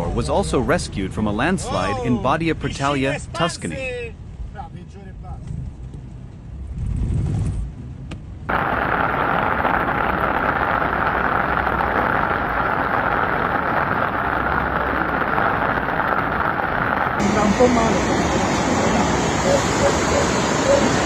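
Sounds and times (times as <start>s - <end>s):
floodwater rushing: 8.5s - 21.0s.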